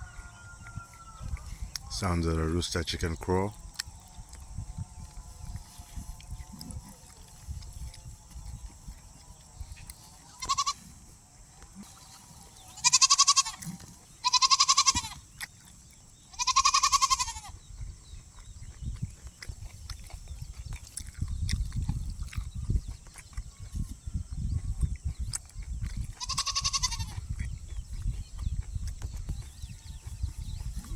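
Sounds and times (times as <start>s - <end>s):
goat bleating: 10.3s - 10.9s, 12.8s - 15.2s, 16.3s - 17.6s, 26.2s - 27.2s.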